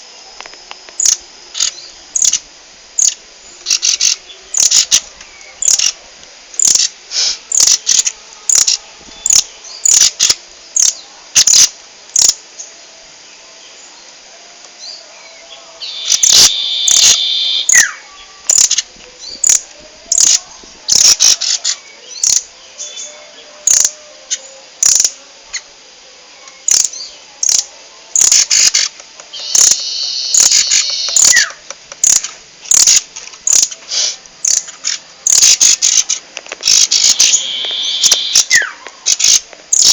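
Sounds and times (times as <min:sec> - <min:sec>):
bird rapid buzzing trill: 0:01.0 - 0:02.4, 0:03.0 - 0:05.0, 0:05.6 - 0:06.0, 0:06.6 - 0:12.4, 0:15.8 - 0:17.9, 0:18.5 - 0:22.5, 0:23.6 - 0:24.0, 0:24.8 - 0:25.2, 0:26.7 - 0:33.8, 0:34.4 - 0:39.9
bird sharp chip notes: 0:28.2 - 0:33.8, 0:35.3 - 0:39.9.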